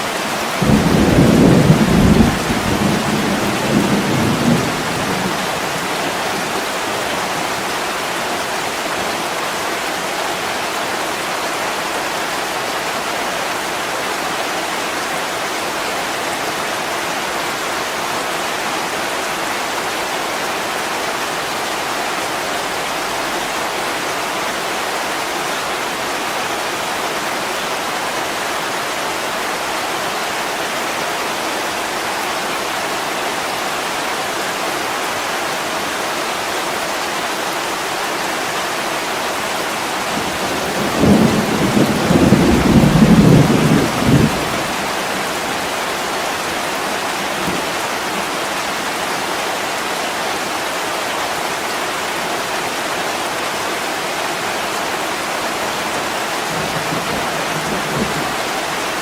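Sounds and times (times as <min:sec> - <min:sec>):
heavy rain against window: 0:00.0 - 0:17.5, 0:38.7 - 0:51.0, 0:52.6 - 0:59.0
thunder rumbling: 0:00.6 - 0:06.5, 0:40.2 - 0:45.7.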